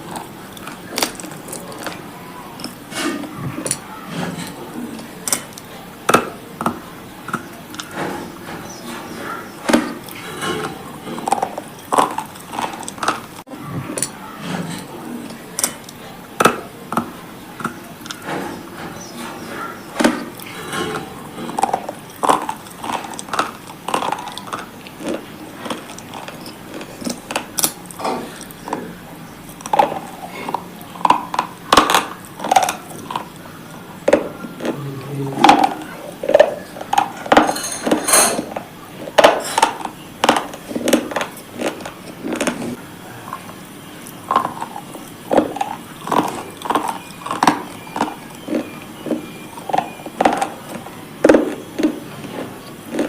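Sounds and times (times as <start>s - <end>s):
crunching and snapping of brittle cubes: 9.6s - 14.8s, 20.0s - 28.9s, 29.5s - 34.3s, 38.6s - 53.0s.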